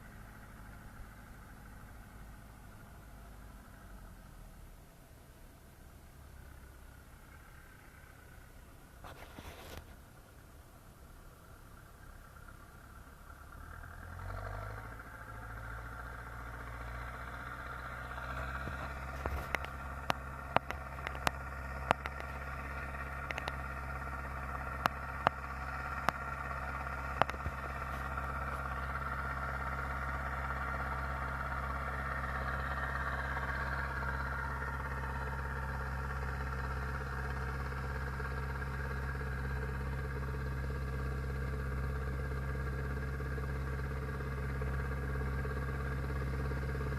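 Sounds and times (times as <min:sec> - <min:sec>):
tractor diesel engine running: 0:00.0 - 0:46.9
sharp clicks and clatters: 0:18.6 - 0:22.6, 0:23.2 - 0:23.6, 0:27.1 - 0:28.7.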